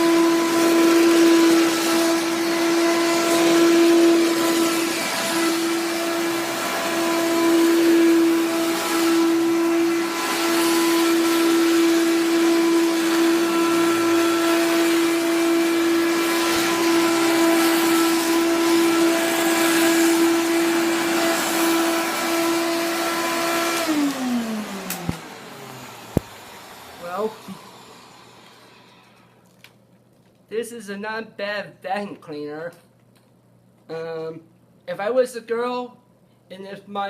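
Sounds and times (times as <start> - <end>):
vacuum motor spinning down: 0.0 - 29.4
vacuum cleaner running: 0.0 - 29.5.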